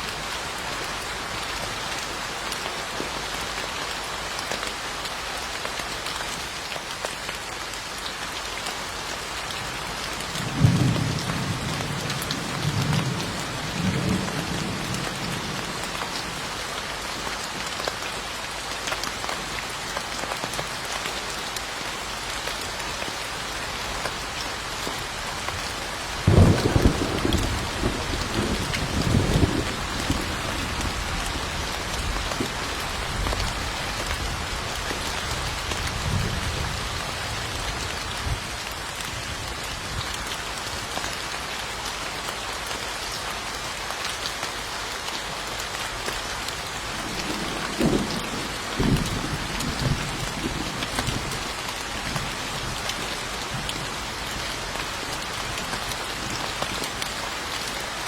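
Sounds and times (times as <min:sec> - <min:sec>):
steady rain falling: 0:00.0 - 0:58.0
thunder rolling: 0:26.3 - 0:30.3.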